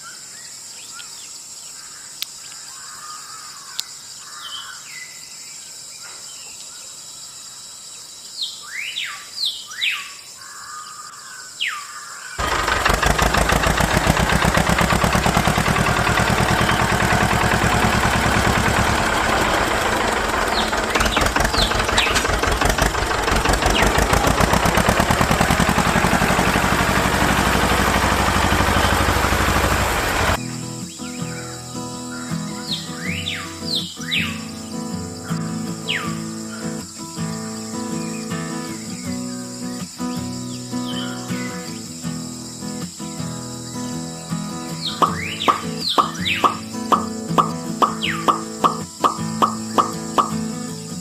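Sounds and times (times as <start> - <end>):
birds chirping: 8.3 - 42.0, 43.4 - 51.0
small motor-driven machine rattling: 12.4 - 30.4.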